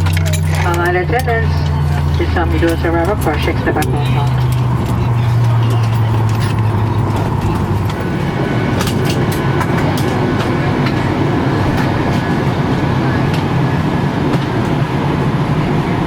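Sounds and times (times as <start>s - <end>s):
low hum: 0.0s - 16.0s.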